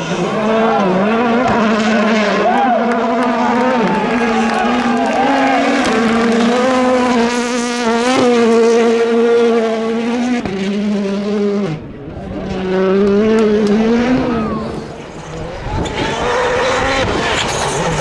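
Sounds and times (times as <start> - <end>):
rally car engine revving: 0.0 - 18.0.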